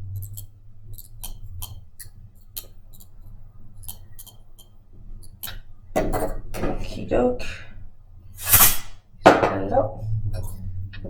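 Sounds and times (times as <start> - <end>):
faint low hum: 0.0 - 11.0
metal blade clicking on grille: 0.1 - 3.2.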